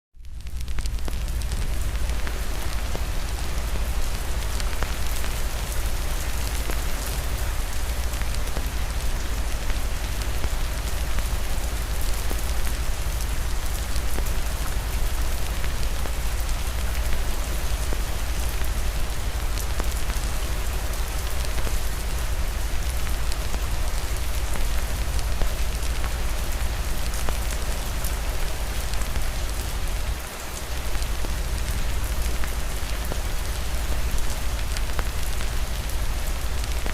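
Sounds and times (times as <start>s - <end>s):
wood fire crackling: 0.2s - 5.4s
steady rain falling: 0.2s - 36.9s.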